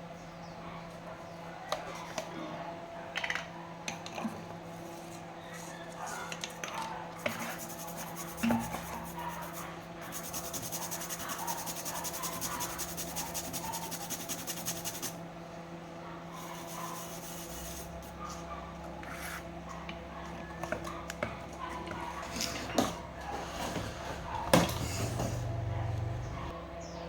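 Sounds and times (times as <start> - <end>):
low electrical hum: 0.0 - 27.0
rapid scraping strokes: 7.2 - 15.2, 16.4 - 18.3.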